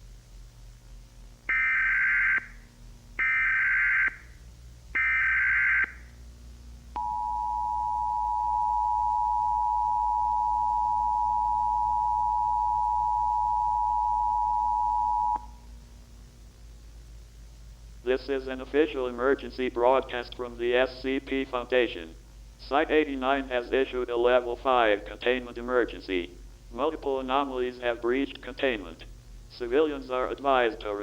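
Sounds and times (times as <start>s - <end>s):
two-tone attention signal: 7.0s - 15.4s.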